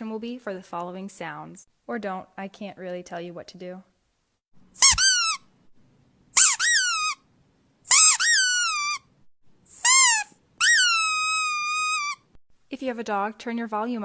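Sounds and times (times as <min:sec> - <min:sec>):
high-pitched squeaks: 0:04.8 - 0:05.5, 0:06.4 - 0:07.2, 0:07.9 - 0:09.1, 0:09.7 - 0:12.4.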